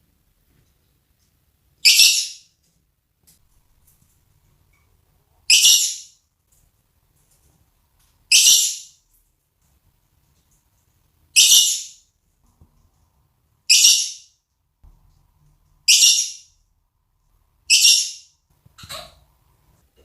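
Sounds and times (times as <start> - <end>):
parakeet calling: 1.8 - 2.5, 5.5 - 6.2, 8.3 - 8.9, 11.4 - 12.0, 13.7 - 14.3, 15.9 - 16.5, 17.7 - 19.1.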